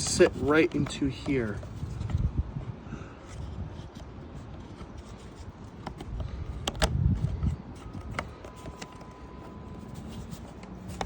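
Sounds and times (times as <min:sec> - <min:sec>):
plastic housing clicks and knocks: 0:05.8 - 0:07.3.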